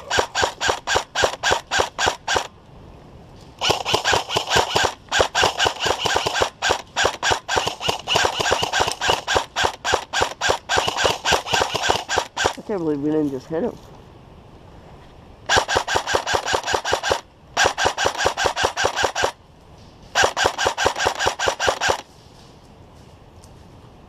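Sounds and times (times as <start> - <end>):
airsoft rifles firing rapid shots: 0.0 - 2.5, 3.6 - 12.7, 15.5 - 19.4, 20.2 - 22.1.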